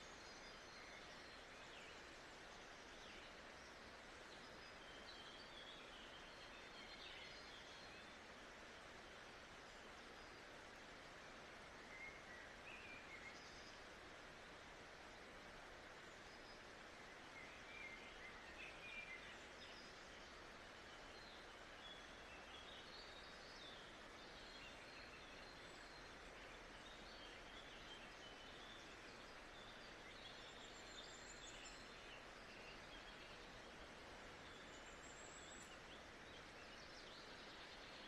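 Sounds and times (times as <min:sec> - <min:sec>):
small birds chirping: 0:15.9 - 0:38.0.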